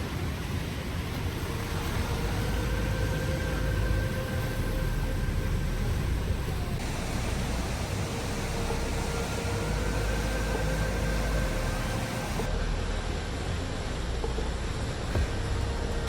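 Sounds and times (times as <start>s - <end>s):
waterfall rushing: 0.0s - 12.5s.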